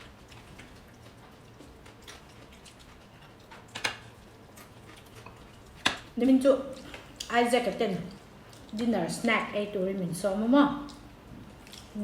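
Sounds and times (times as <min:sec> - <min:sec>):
eating clicks and crunches: 0:00.0 - 0:07.4, 0:10.8 - 0:12.0.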